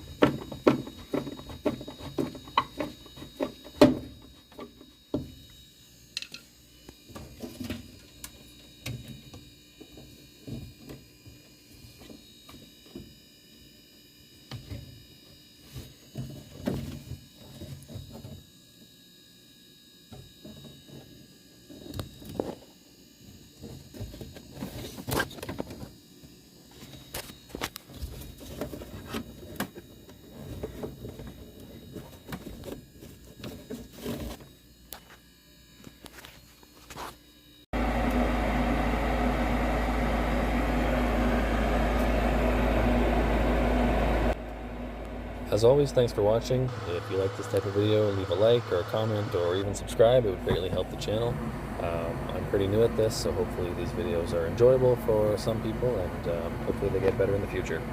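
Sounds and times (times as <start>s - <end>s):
faint hum: 0.0s - 57.9s.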